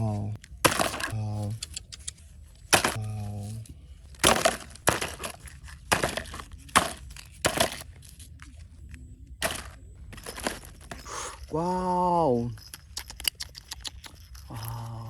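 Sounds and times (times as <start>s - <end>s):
sharp cracks and crunches: 0.4s - 3.4s, 4.0s - 8.7s.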